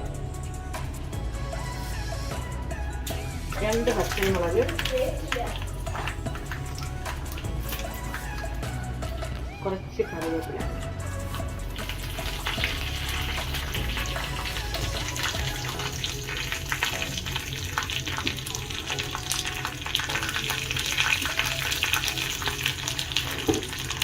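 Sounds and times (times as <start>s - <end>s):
spices sizzling in hot oil: 11.2s - 24.0s.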